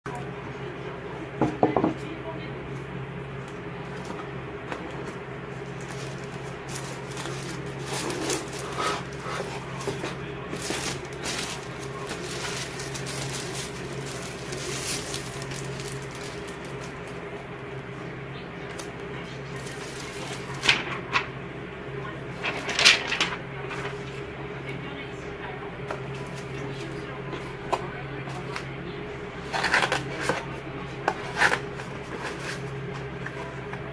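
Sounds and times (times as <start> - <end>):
steady low hum: 0.1 - 33.9
packaging rustling and clicking: 5.8 - 17.2, 29.5 - 33.8.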